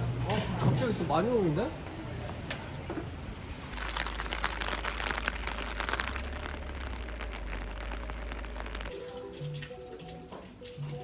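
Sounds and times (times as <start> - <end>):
heavy rain pattering: 3.7 - 9.7
low rumble: 3.8 - 8.9.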